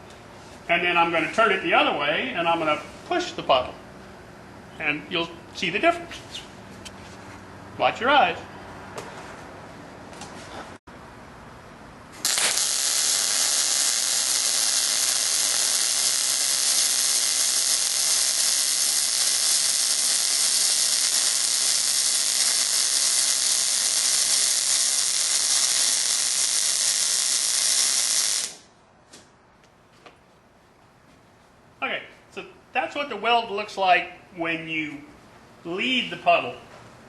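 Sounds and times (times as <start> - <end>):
welding arc hissing: 12.2 - 28.7.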